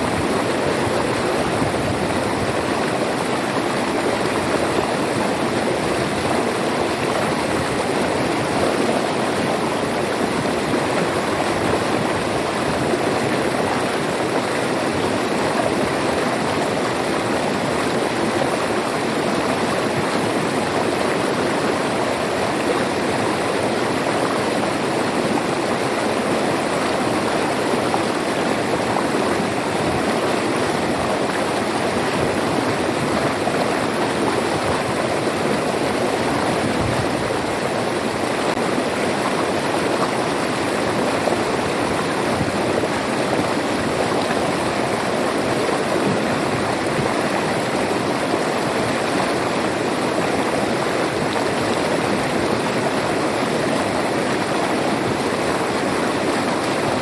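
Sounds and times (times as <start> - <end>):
river water rushing: 0.0 - 57.0.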